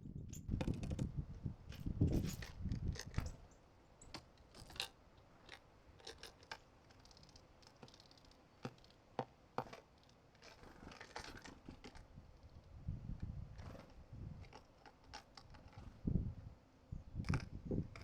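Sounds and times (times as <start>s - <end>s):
birds pecking on a seed feeder: 4.0s - 12.7s, 13.5s - 16.0s.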